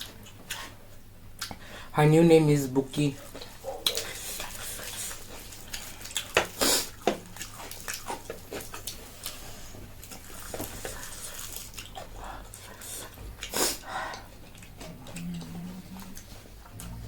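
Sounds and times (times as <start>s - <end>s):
slurping or chewing: 3.4s - 13.8s.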